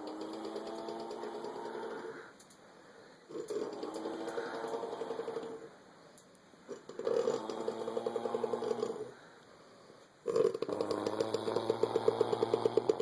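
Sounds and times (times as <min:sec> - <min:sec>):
person snoring with rattling buzz: 0:00.0 - 0:02.3, 0:03.3 - 0:05.7, 0:06.7 - 0:09.2, 0:10.2 - 0:13.0.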